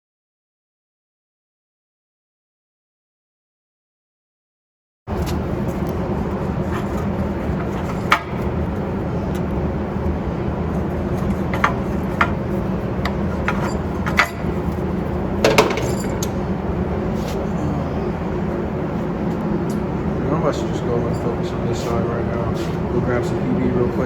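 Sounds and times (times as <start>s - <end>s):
steady low hum: 5.1s - 24.0s.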